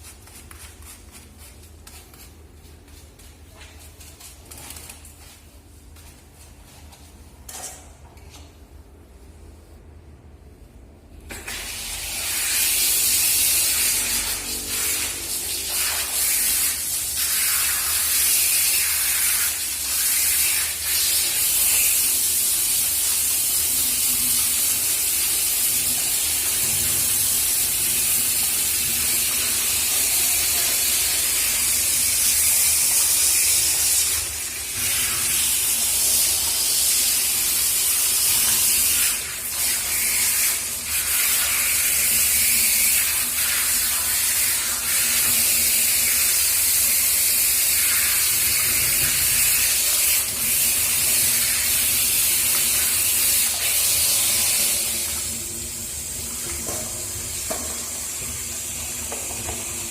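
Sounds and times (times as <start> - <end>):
shower head spraying water: 11.3 - 59.9.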